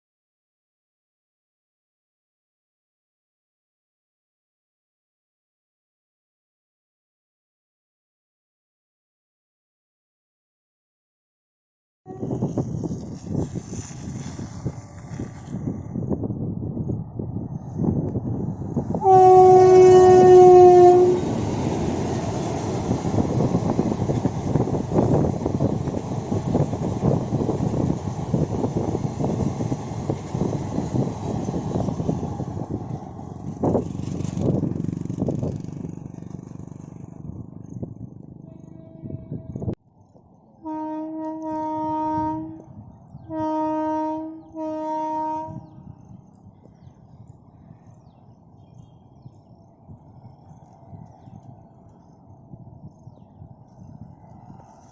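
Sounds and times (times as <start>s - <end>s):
locomotive horn blast: 12.1s - 12.6s, 18.9s - 21.7s, 38.5s - 39.7s, 40.6s - 42.7s, 43.3s - 45.8s
passing train rumble: 12.1s - 54.9s.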